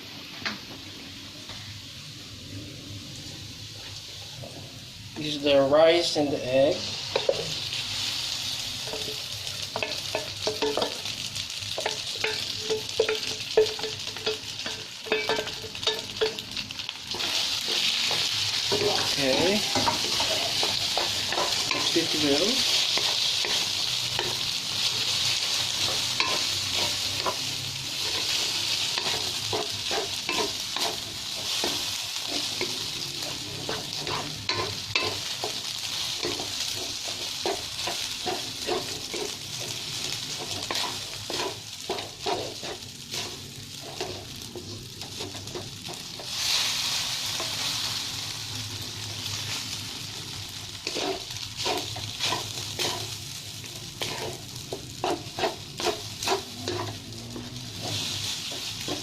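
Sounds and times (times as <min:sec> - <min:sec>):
rice and egg sizzling in oil: 0:00.0 - 0:59.0
utensil scraping a pan: 0:36.2 - 0:46.4, 0:50.8 - 0:53.2, 0:54.0 - 0:59.0.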